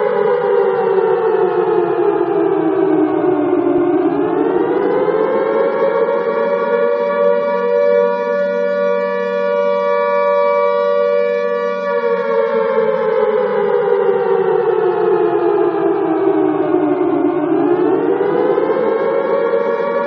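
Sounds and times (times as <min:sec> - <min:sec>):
alarm siren wailing: 0:00.0 - 0:20.0.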